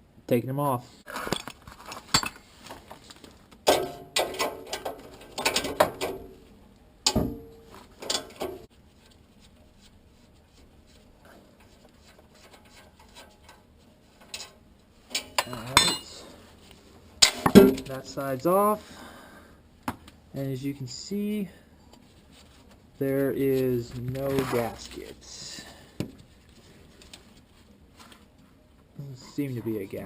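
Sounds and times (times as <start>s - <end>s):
hand tools clinking on metal: 7.1s - 8.7s, 15.1s - 16.3s
heavy metal clank: 17.2s - 18.0s.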